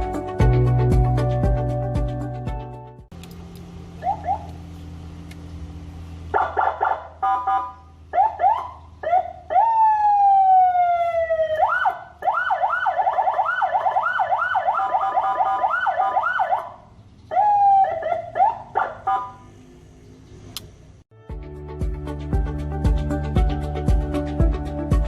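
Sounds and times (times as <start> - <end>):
electronic vehicle siren: 4.0 - 4.6, 6.3 - 19.5.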